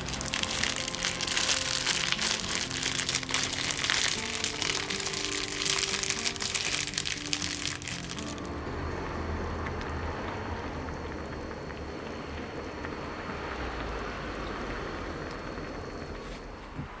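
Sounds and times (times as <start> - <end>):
soup bubbling and hissing: 0.0 - 8.6
gas flame rumble: 8.5 - 17.0.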